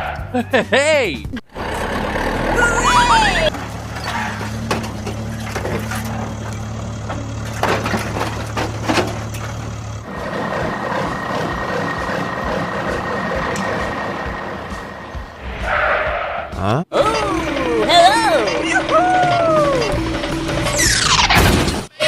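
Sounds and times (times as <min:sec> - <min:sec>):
vehicle engine knocking: 0:03.5 - 0:15.4.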